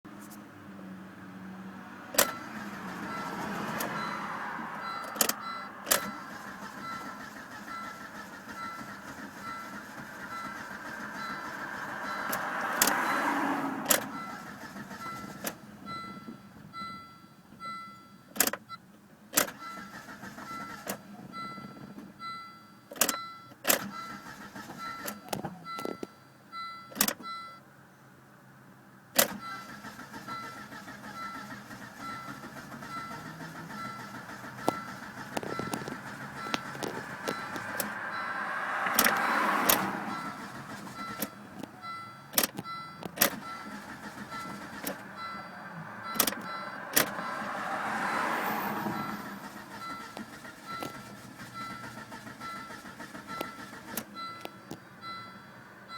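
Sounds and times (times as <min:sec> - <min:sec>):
car engine cranking: 0:02.0 - 0:27.4, 0:29.1 - 0:55.9
repeating beep: 0:03.1 - 0:13.5, 0:14.1 - 0:18.3, 0:32.0 - 0:55.5
sharp clicks: 0:38.8 - 0:45.2, 0:46.1 - 0:47.3.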